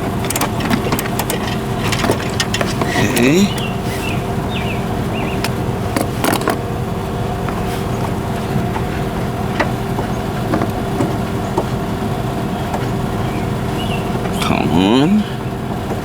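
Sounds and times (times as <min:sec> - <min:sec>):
hand tools clicking and knocking: 0:00.0 - 0:04.1, 0:05.2 - 0:06.7, 0:07.4 - 0:11.9
mechanical hum: 0:00.0 - 0:16.0.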